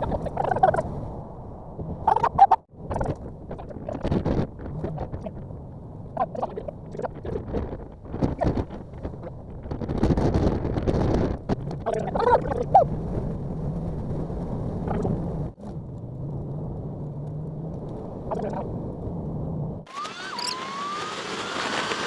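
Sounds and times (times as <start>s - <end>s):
vehicle engine and road drone: 0.0s - 11.9s, 12.7s - 22.0s.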